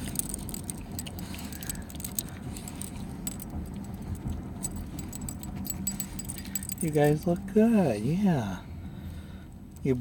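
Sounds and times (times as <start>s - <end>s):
light metallic jingling: 0.0s - 7.6s
vehicle cabin rumble: 0.0s - 10.0s.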